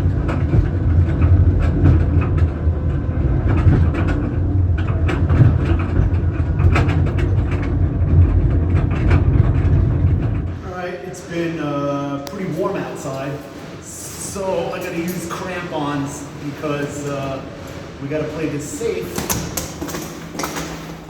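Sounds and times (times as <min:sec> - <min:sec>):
rail car rumbling on track: 0:00.0 - 0:10.7.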